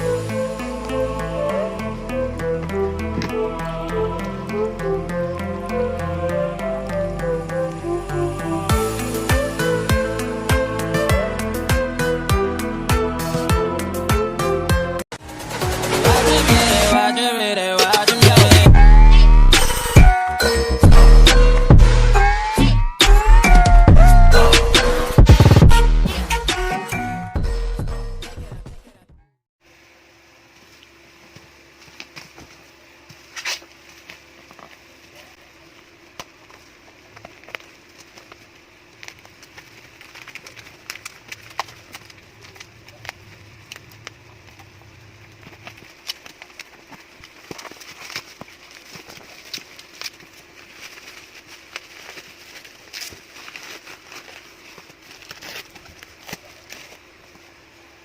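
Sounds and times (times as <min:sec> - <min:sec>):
packaging clicks and crinkles: 0:35.8 - 0:57.5.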